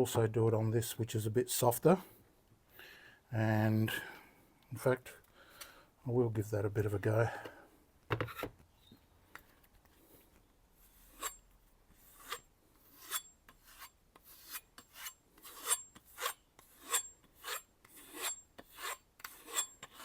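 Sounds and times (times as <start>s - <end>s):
knife rasping on leather strop: 11.0s - 11.4s, 12.1s - 12.4s, 13.0s - 20.0s.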